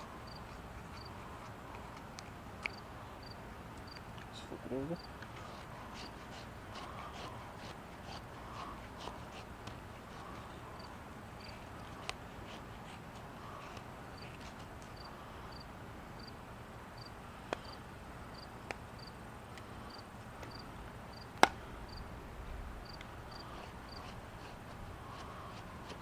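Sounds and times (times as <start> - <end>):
insect chirping: 0.1 - 1.4, 2.7 - 4.0, 4.9 - 5.2, 10.7 - 12.0, 15.0 - 16.4, 17.0 - 19.1, 19.8 - 21.3, 21.9 - 22.1, 22.8 - 24.1.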